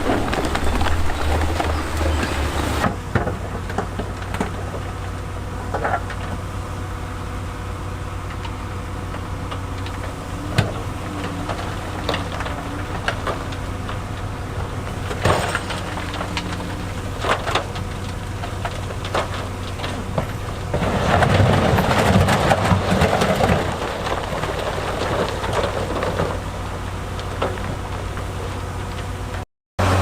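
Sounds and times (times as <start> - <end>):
diesel machinery running: 0.0 - 30.0
loud rushing clatter: 20.1 - 26.4.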